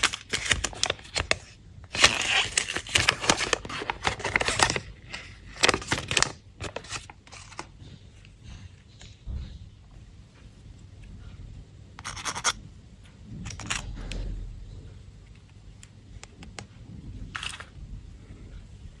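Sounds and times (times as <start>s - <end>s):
candy wrapper crinkling: 0.0s - 7.7s.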